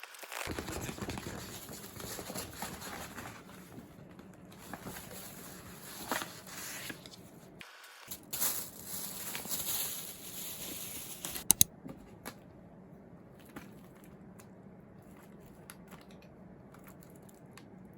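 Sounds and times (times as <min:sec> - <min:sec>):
plastic wrap and paper crinkling: 0:00.0 - 0:07.4, 0:08.1 - 0:11.5.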